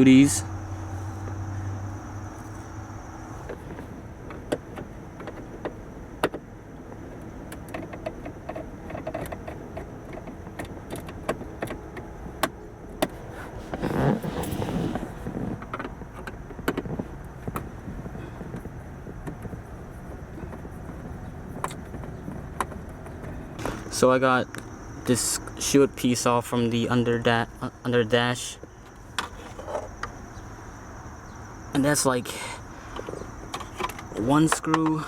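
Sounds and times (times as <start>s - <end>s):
panel scraping rustle: 13.1s - 15.7s.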